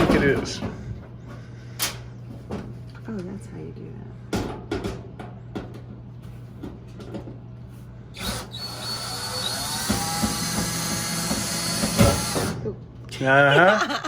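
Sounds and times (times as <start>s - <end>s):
power drill spinning: 8.2s - 12.6s.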